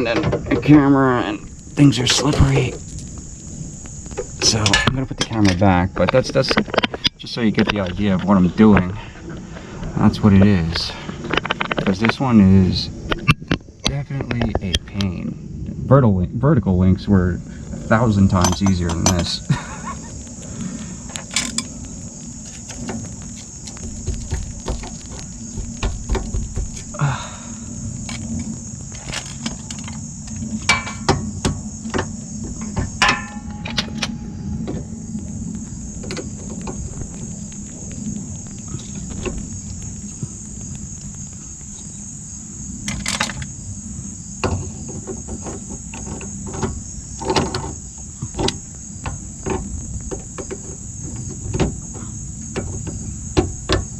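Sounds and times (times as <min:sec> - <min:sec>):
crickets chirring: 0:00.0 - 0:53.9
metal parts rattling: 0:18.4 - 0:19.4, 0:21.2 - 0:21.7, 0:28.0 - 0:30.0, 0:42.9 - 0:43.5
hand tools clicking on metal: 0:21.2 - 0:21.7.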